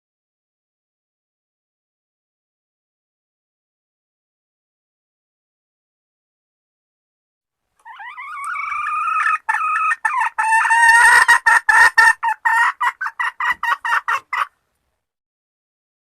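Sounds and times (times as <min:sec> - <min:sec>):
hen clucking rapidly: 0:07.8 - 0:14.6.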